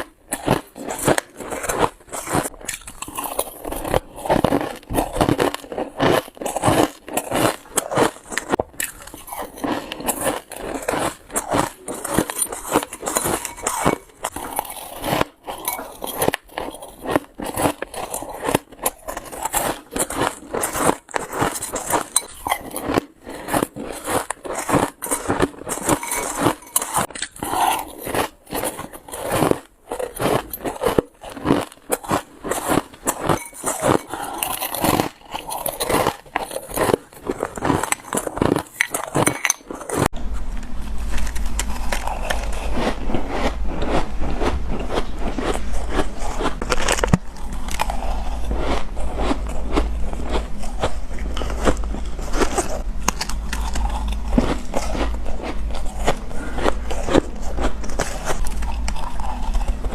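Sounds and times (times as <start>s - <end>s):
shaved ice crunching: 0.3s - 40.1s
steady low hum: 8.2s - 59.9s.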